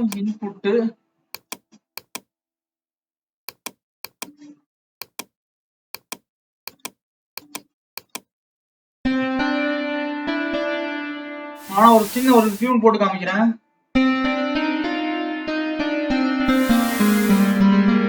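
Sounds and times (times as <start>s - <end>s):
sharp plastic mouse clicks: 1.4s - 2.3s, 3.5s - 4.4s, 5.0s - 5.3s, 6.0s - 8.3s.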